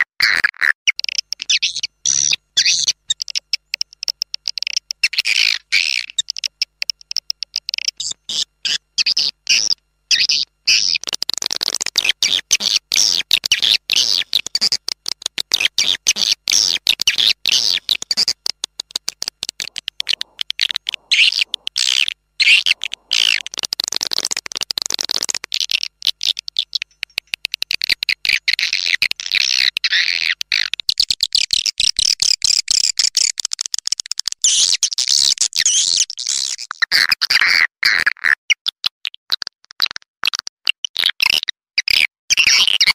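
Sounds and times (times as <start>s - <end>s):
swiftlets chirping: 1.4s - 27.5s.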